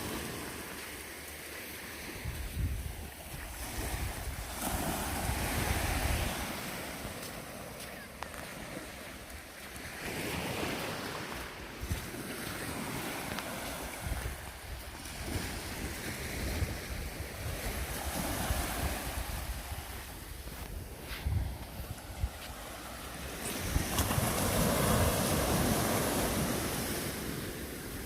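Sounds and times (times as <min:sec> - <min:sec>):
sea waves washing onto beach: 0:00.0 - 0:28.0
wind buffeting microphone: 0:02.1 - 0:07.0, 0:11.6 - 0:27.3.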